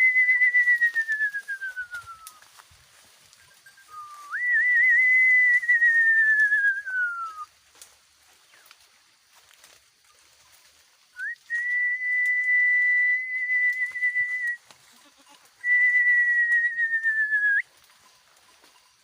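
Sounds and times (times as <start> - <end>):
person whistling high notes: 0.0 - 2.4, 3.6 - 7.5, 11.2 - 14.6, 15.6 - 17.6.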